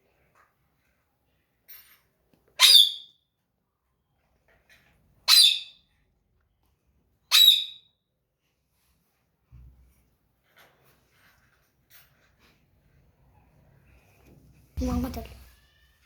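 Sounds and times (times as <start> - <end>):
parrot squawking: 2.6 - 3.1, 5.3 - 5.8, 7.3 - 7.8.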